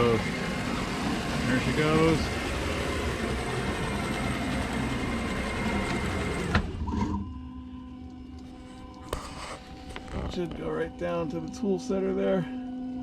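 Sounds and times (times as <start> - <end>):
machine rushing noise: 0.0 - 7.4
motor hum: 0.0 - 11.6.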